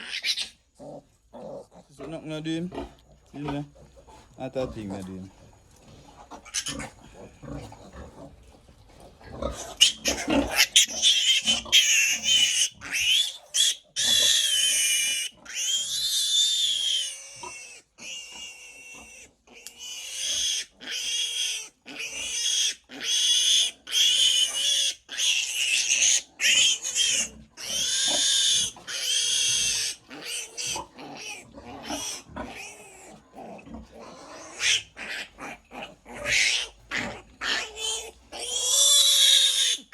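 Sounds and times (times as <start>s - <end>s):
piglet squealing: 0.0s - 0.6s, 6.4s - 7.0s, 9.5s - 33.1s, 34.0s - 39.9s.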